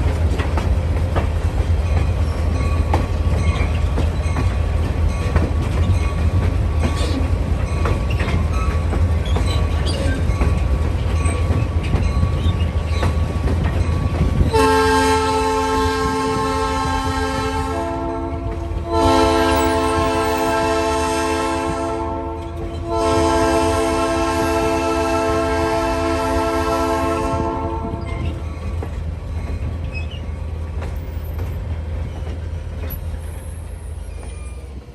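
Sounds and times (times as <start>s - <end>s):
wheels clicking on rails: 0.0s - 14.6s, 27.8s - 34.9s
train rumbling: 0.0s - 34.9s
train horn chord: 14.5s - 28.1s.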